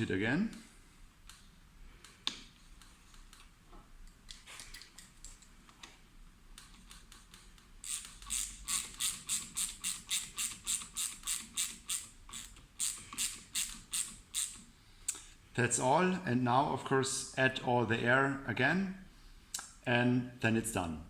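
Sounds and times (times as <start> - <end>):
ratchet wrench clicking: 6.9 - 14.7.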